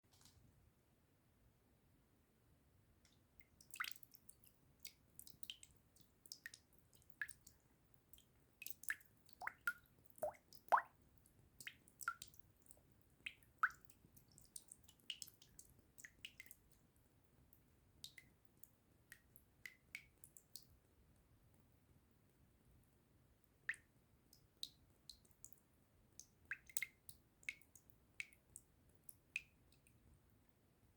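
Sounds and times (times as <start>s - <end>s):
water drops dripping: 3.0s - 16.8s, 18.0s - 20.8s, 23.6s - 30.0s.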